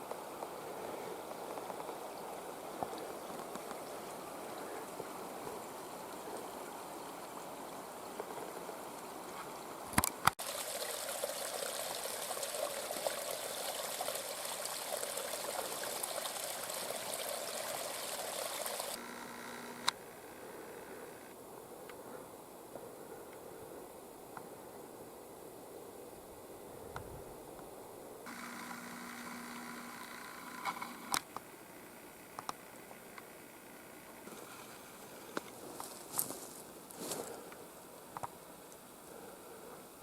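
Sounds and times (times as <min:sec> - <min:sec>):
water rushing: 0:08.8 - 0:19.0
water trickling: 0:10.4 - 0:19.0.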